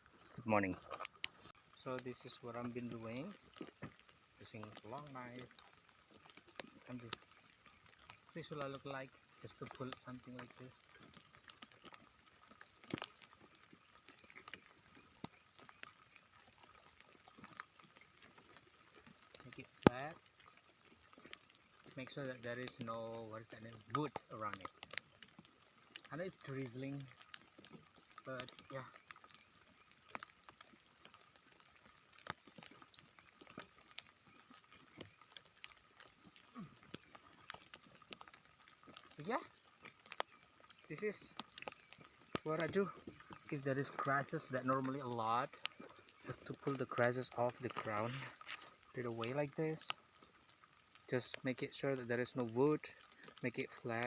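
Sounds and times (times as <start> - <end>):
light drizzle: 0.0 - 54.0
grass being pulled by hand: 40.8 - 49.9.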